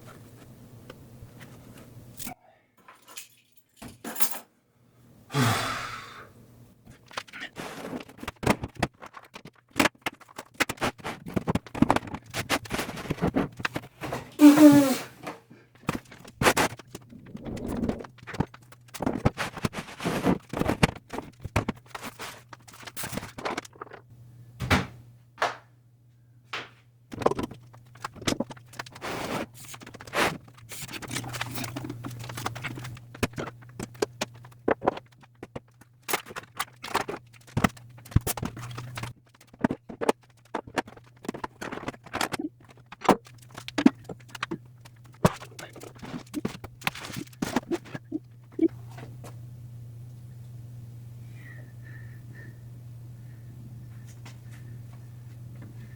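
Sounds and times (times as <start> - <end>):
objects knocking and clattering: 2.2 - 4.5, 6.9 - 14.4, 15.2 - 25.7, 26.6 - 49.0
low steady hum: 11.3 - 55.9.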